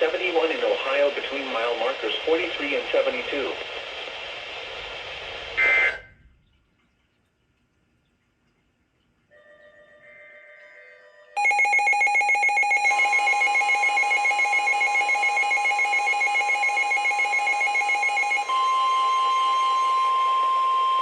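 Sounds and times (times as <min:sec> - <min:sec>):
rapidly pulsing electronic alarm: 0:11.4 - 0:21.0.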